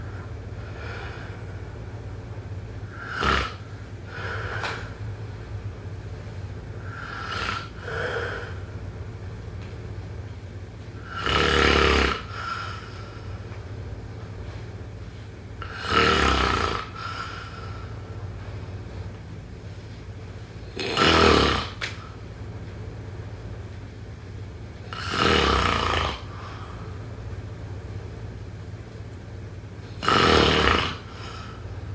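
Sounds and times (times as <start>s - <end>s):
soft breath: 0.0s - 1.9s, 2.8s - 5.2s, 16.9s - 20.0s
steady low hum: 0.0s - 31.9s
person snoring: 2.9s - 4.8s, 6.8s - 8.6s, 11.0s - 13.2s, 15.6s - 17.9s, 20.8s - 21.8s, 24.9s - 26.9s, 30.0s - 31.6s.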